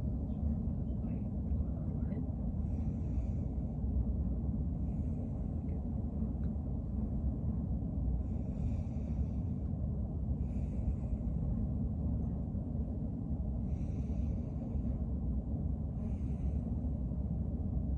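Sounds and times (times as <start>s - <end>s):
steady low rumble: 0.0s - 17.9s
person breathing deeply: 2.6s - 3.8s, 8.2s - 9.7s, 10.4s - 11.6s, 13.6s - 15.1s, 15.9s - 17.0s.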